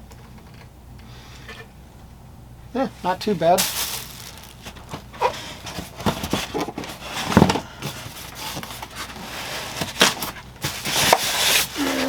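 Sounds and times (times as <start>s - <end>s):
packaging rustling: 3.5s - 12.0s.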